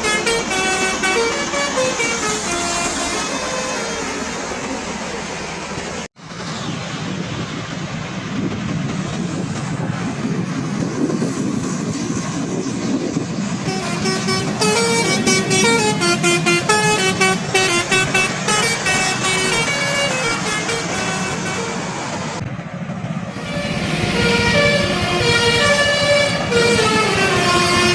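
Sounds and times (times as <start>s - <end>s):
multi-tone bus horn melody: 0.0s - 4.6s, 13.6s - 22.4s, 23.4s - 27.9s
bus engine and road noise: 0.0s - 27.9s.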